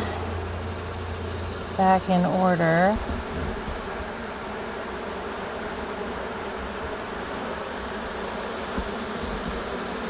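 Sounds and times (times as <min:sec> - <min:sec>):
bees buzzing: 0:00.0 - 0:10.0.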